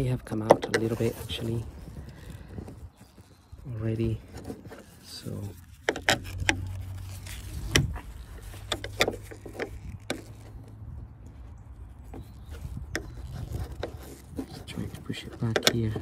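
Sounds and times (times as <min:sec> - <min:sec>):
plastic clicks and knocks: 0:00.2 - 0:01.0, 0:07.6 - 0:10.6, 0:15.3 - 0:16.0.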